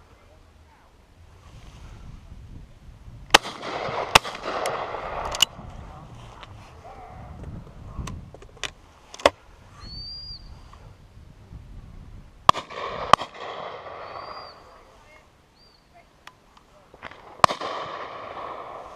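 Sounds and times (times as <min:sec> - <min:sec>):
shotgun shots: 0:03.3 - 0:05.4, 0:12.5 - 0:14.6, 0:17.0 - 0:18.9.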